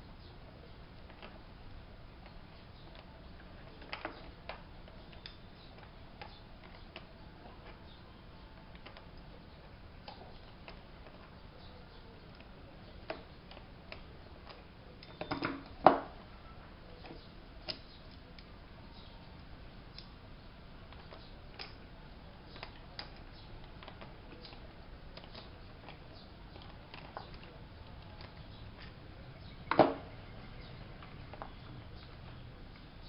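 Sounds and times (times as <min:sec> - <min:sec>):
clicks and taps of objects handled: 0:02.2 - 0:08.0, 0:08.6 - 0:16.2, 0:20.9 - 0:21.9, 0:22.5 - 0:29.0.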